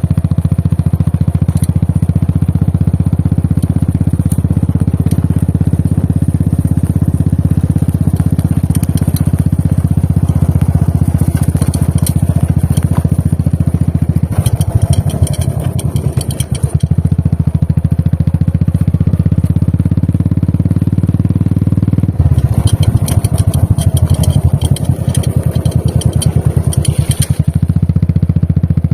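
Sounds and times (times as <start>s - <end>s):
motorcycle engine running: 0.0s - 28.9s
crackles and rattles: 7.8s - 17.1s, 22.2s - 27.8s.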